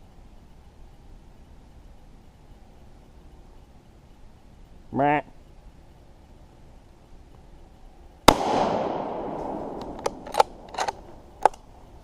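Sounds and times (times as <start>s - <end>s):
distant rifle shot with echo: 8.3s - 11.2s.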